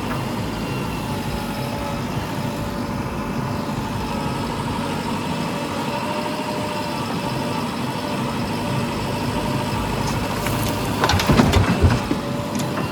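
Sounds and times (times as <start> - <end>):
diesel engine running: 0.0 - 12.9
sharp knocks and clatter: 10.0 - 12.9.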